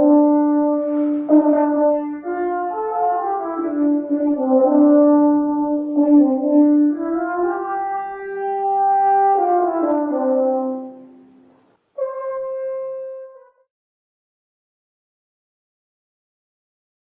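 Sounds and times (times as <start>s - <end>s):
french horn playing held notes: 0.0s - 13.6s.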